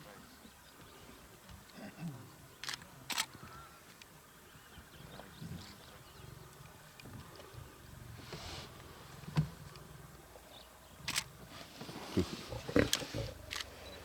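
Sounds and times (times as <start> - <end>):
lioness growling and snarling: 11.1 - 14.0.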